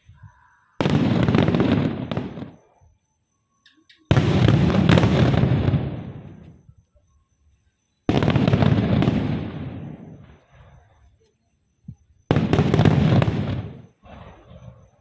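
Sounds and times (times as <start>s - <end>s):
fireworks bangs and crackling: 0.0s - 2.7s, 4.0s - 6.7s, 8.0s - 11.2s, 11.9s - 15.0s.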